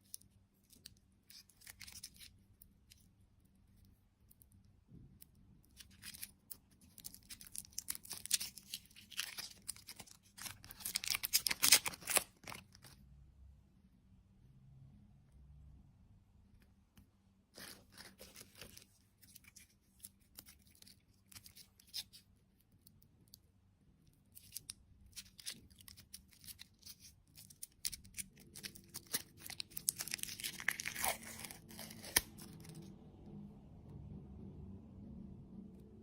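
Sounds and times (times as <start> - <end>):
packaging crinkling and tearing: 0.0 - 2.4, 5.8 - 13.0, 17.6 - 22.2, 24.4 - 32.8.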